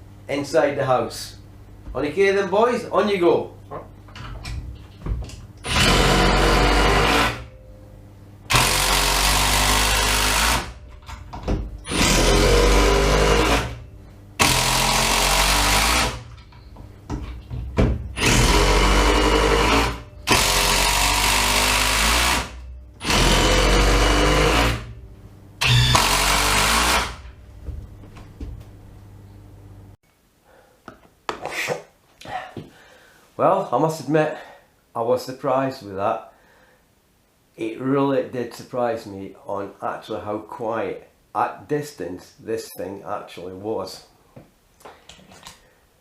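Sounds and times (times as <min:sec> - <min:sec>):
impact driver bursts: 0:05.6 - 0:07.5, 0:08.5 - 0:10.8, 0:11.9 - 0:13.8, 0:14.4 - 0:16.3, 0:18.2 - 0:25.0, 0:25.6 - 0:27.3.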